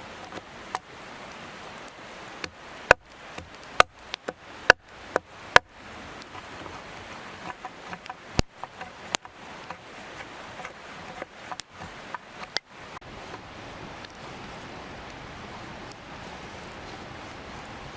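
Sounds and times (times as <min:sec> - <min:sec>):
blade chopping strikes: 0:02.4 - 0:05.7.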